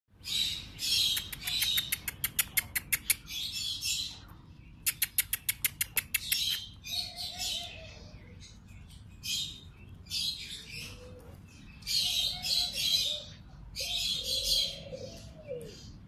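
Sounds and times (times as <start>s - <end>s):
birds chirping: 0.1s - 16.0s
harsh raspy bird calls: 0.2s - 4.2s, 4.8s - 8.5s, 11.8s - 16.0s.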